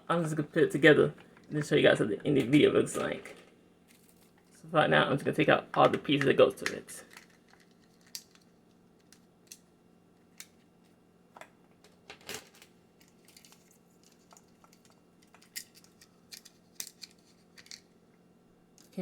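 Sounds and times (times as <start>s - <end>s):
plastic pieces clicking and tapping: 5.8s - 9.6s, 11.4s - 17.9s.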